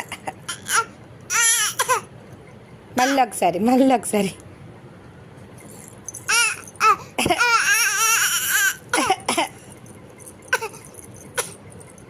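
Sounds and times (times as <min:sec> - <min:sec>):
baby fake coughing: 0:00.0 - 0:02.1, 0:06.3 - 0:09.6, 0:10.5 - 0:11.6
baby squealing: 0:00.5 - 0:02.0, 0:06.3 - 0:09.0.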